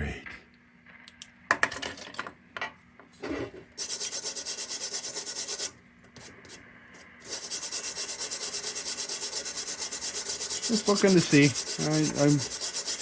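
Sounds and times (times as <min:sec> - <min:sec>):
hand scrubbing metal with abrasive: 0:03.8 - 0:05.7, 0:07.2 - 0:13.0.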